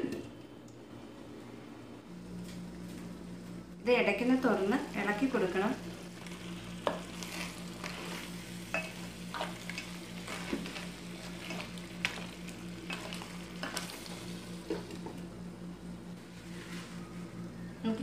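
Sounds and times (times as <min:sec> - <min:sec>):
steady low hum: 0:00.0 - 0:18.0
food sizzling and bubbling: 0:04.4 - 0:18.0.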